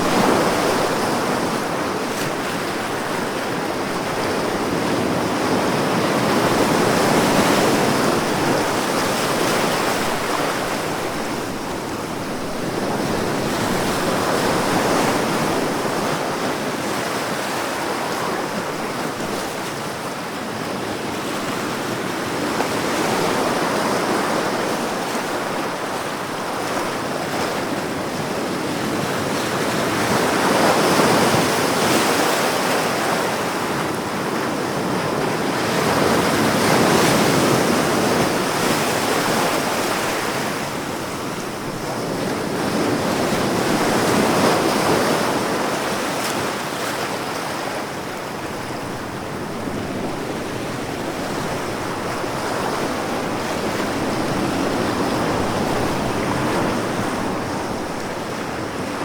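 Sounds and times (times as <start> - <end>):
ocean waves breaking: 21.0 - 59.0.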